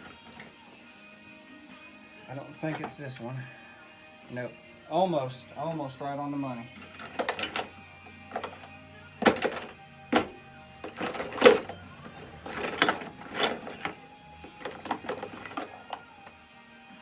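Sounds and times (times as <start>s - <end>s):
faint background music: 0.0s - 17.0s
metal sockets clinking: 6.9s - 16.2s.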